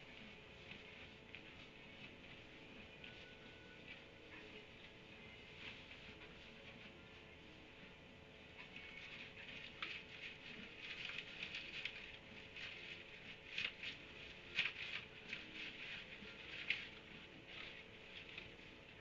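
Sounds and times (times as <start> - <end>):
faint electrical hum: 0.0 - 19.0
small animals squeaking and rustling: 8.4 - 19.0.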